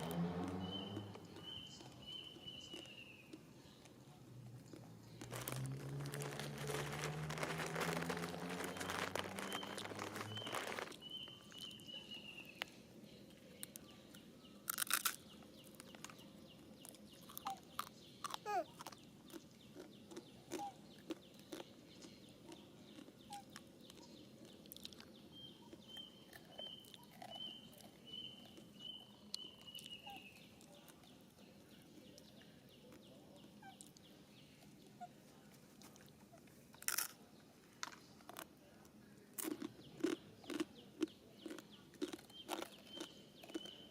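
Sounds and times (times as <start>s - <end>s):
small clicks and crunches: 0.0s - 11.9s, 14.7s - 30.0s, 35.5s - 43.9s.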